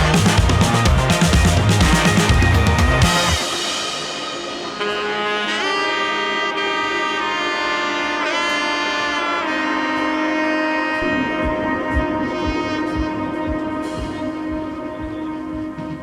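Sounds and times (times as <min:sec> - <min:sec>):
bass drum beat: 0:00.0 - 0:03.8, 0:11.3 - 0:16.0
lead melody with pitch bends: 0:00.0 - 0:16.0.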